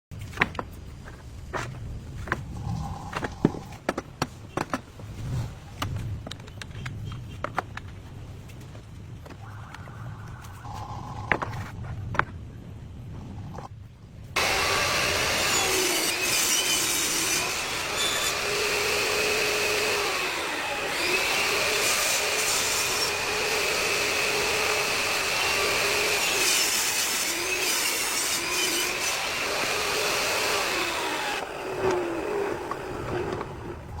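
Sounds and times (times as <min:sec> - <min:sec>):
power saw cutting wood: 0:14.4 - 0:33.7.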